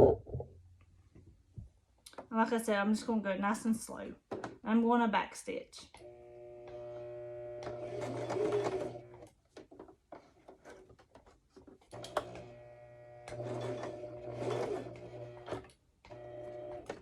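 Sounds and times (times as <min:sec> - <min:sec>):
sewing machine stitching: 0:06.6 - 0:09.3, 0:11.9 - 0:17.0.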